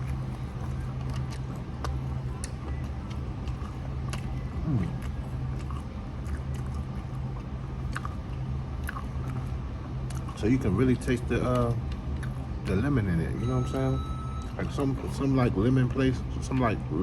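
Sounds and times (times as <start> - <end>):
crunching fried chicken: 0.0 - 13.3
steady low hum: 0.0 - 17.0.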